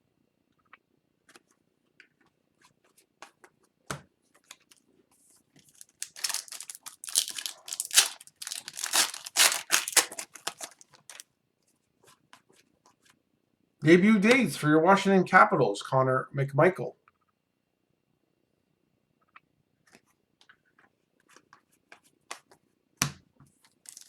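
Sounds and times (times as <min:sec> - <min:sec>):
foil wrapper tearing and crinkling: 0:05.6 - 0:11.2.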